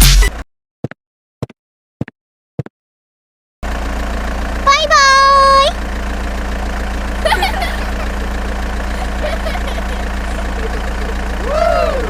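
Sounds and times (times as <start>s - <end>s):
small engine idling: 3.6s - 12.0s.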